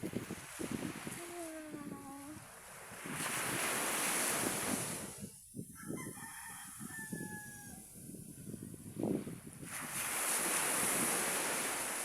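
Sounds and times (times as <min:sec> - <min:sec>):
wind and surf: 0:00.0 - 0:12.0
rooster crowing faintly: 0:05.8 - 0:08.0.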